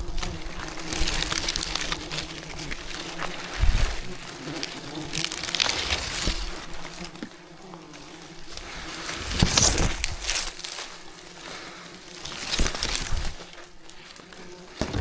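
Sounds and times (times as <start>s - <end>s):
bees buzzing: 14.4s - 15.0s.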